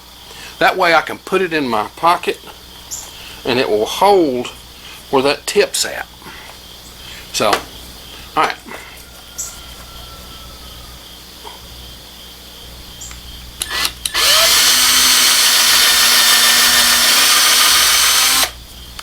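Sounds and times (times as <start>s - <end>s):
electric drill drilling: 13.6s - 18.6s.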